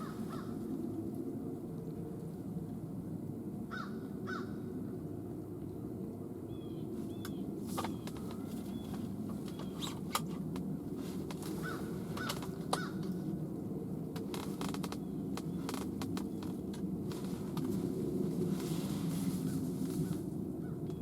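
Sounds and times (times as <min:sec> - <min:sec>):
steady low rumble: 0:00.0 - 0:21.0
short bird calls: 0:11.5 - 0:13.0.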